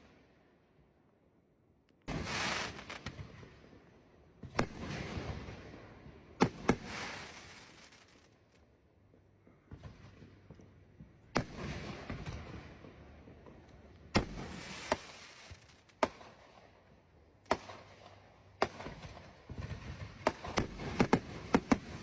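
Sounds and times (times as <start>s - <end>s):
fireworks crackling: 2.1s - 3.3s, 6.4s - 8.6s, 14.2s - 16.2s
fireworks bangs: 2.1s - 3.5s, 6.4s - 8.3s, 14.2s - 16.4s.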